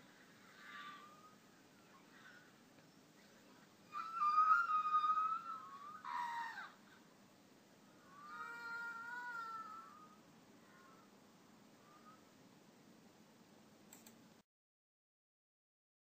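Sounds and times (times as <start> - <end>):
wavering animal calls: 0.1 - 2.5, 3.4 - 6.9, 8.0 - 11.2.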